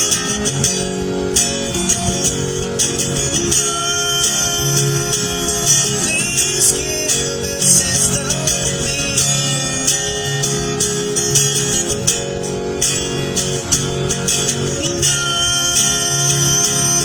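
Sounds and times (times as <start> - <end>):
plucked string tones: 0.0 - 17.0
sustained notes: 0.0 - 17.0.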